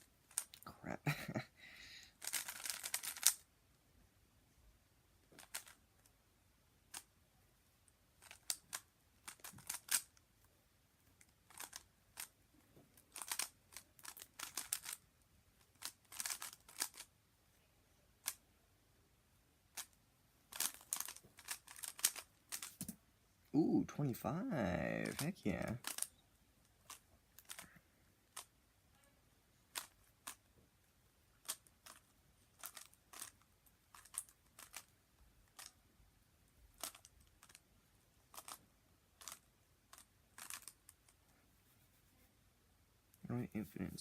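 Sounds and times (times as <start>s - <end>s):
plastic puzzle cube clicking: 0.3s - 0.6s, 2.2s - 3.4s, 5.2s - 6.1s, 8.2s - 10.2s, 11.2s - 15.0s, 15.6s - 17.1s, 18.2s - 18.4s, 19.7s - 23.0s, 25.0s - 28.5s, 29.7s - 30.5s, 31.4s - 34.9s, 35.5s - 35.8s, 36.8s - 37.6s, 38.3s - 38.6s, 39.2s - 41.2s.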